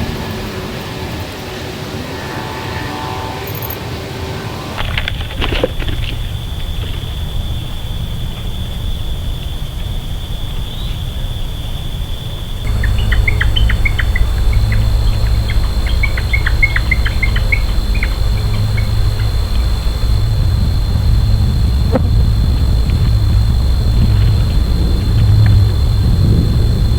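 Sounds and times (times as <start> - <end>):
low rumble: 4.7 - 26.9
bird chirping: 4.8 - 25.9.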